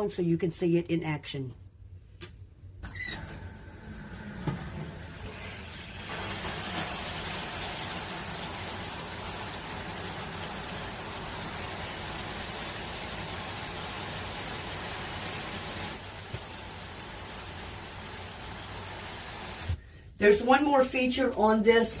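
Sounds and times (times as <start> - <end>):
shower head spraying water: 6.0 - 19.8.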